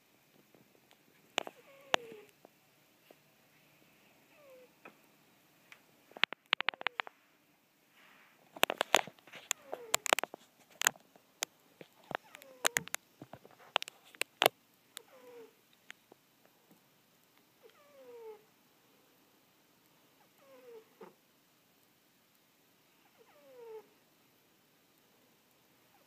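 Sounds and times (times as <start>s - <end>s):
cat snoring: 1.5s - 2.3s, 15.0s - 15.6s, 17.6s - 18.5s, 20.2s - 21.2s, 23.0s - 24.0s
sharp clicks: 5.7s - 7.1s.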